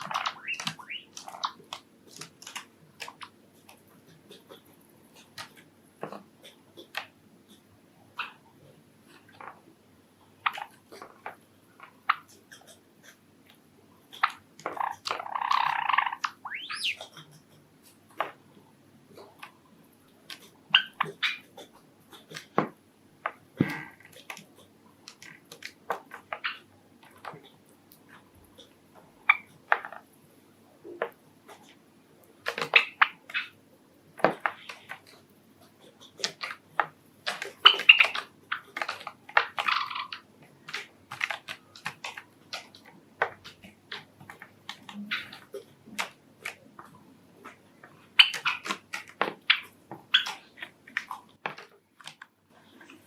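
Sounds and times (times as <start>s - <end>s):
harsh bird call: 0.0s - 1.2s, 15.5s - 17.1s
bird chirps: 0.0s - 1.6s, 14.8s - 17.2s
birds pecking and beak tapping: 0.0s - 9.7s, 10.4s - 30.2s, 30.8s - 53.0s.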